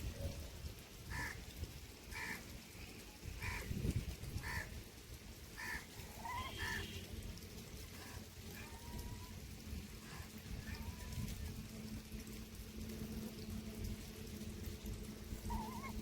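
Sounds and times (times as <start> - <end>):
bird calling: 15.4 - 16.0.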